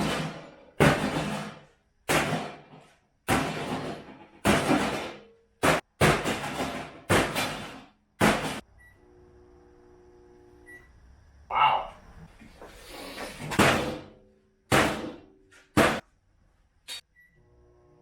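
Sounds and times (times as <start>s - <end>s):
hammer smashing microwave: 0.0s - 8.6s, 13.5s - 16.1s.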